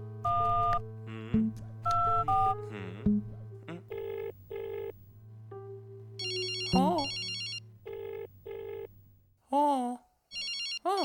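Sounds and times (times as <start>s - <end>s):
soft background music: 0.0s - 8.9s
keypad button beeps: 0.3s - 0.8s, 1.8s - 2.6s, 6.2s - 7.6s
trilling telephone ring: 3.9s - 5.0s, 6.2s - 8.9s, 10.3s - 10.9s.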